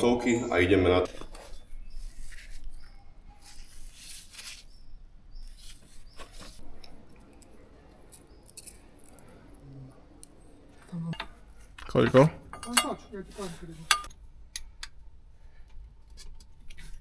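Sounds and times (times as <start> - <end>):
small parts clicking and scraping: 6.8 - 9.6, 13.8 - 15.0.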